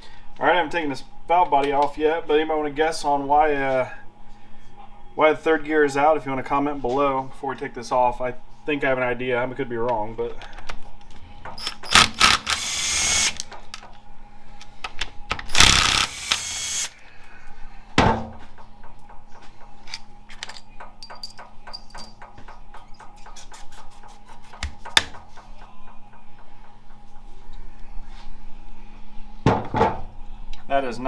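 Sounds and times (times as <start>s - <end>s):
power tool bursts: 11.6s - 13.4s, 15.5s - 17.0s.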